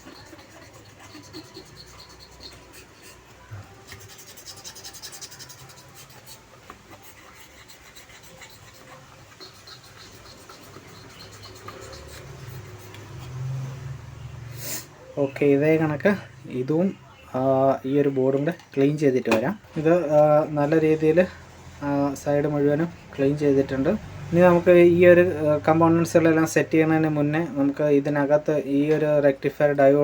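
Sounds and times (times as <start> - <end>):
brush scrubbing circuit board: 0.0 - 13.8.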